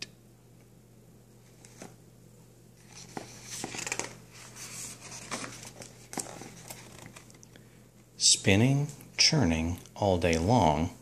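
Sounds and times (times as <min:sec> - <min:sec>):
book pages rustling and turning: 0:01.4 - 0:02.0, 0:02.8 - 0:07.5.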